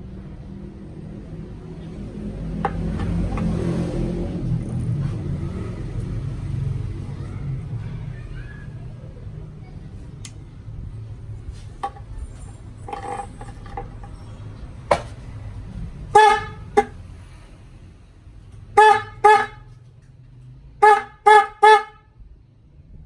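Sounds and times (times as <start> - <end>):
car horn toots: 2.6 - 4.1, 12.9 - 13.8, 16.1 - 17.0, 18.7 - 19.8, 20.8 - 22.1.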